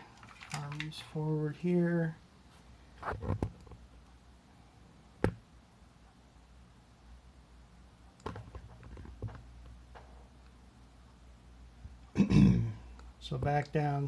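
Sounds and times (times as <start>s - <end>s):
small clicks and knocks: 8.2s - 10.6s.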